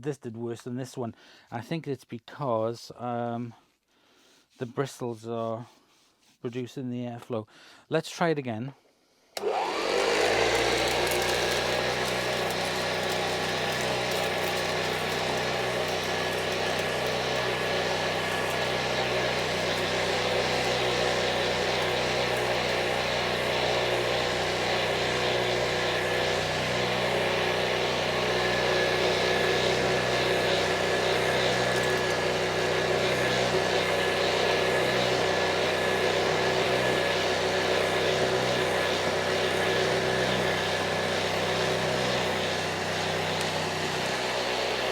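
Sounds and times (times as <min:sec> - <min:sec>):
vacuum cleaner running: 0:09.4 - 0:44.9.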